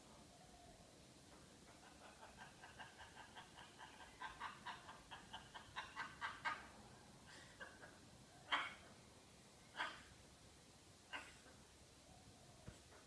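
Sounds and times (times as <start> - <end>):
parrot mimicking laughter: 7.7 - 8.9.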